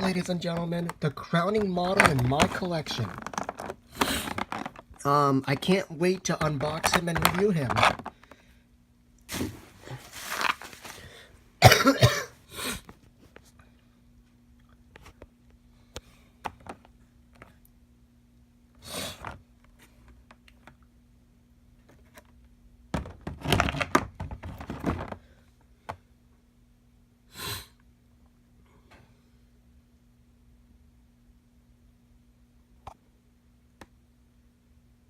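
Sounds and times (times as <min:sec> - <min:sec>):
rustling and knocking of packaging: 0:00.0 - 0:08.3, 0:09.3 - 0:11.2, 0:22.9 - 0:26.0
faint low hum: 0:00.0 - 0:35.0.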